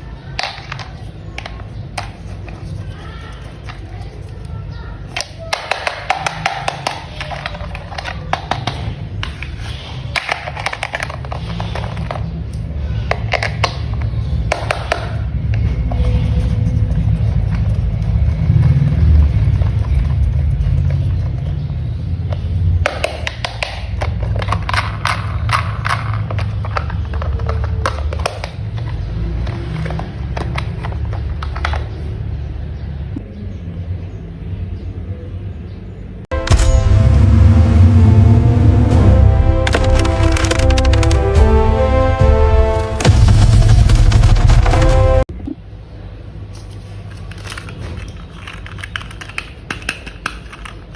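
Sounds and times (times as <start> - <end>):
plastic parts clicking together: 5.1 - 15.2, 22.3 - 32.0, 46.6 - 50.9
steady low hum: 36.3 - 45.6.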